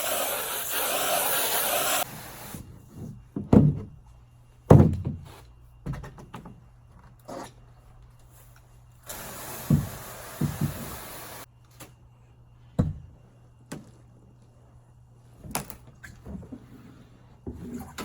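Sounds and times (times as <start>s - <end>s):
hose spraying: 0.0s - 2.6s, 9.0s - 11.5s.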